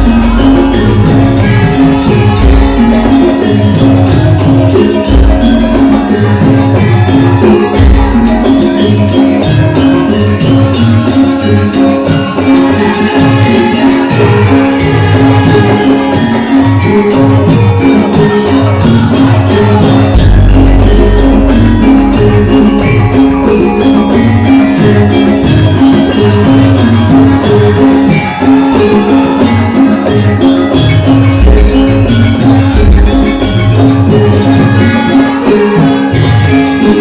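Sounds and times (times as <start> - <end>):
gamelan music: 0.0 - 37.0.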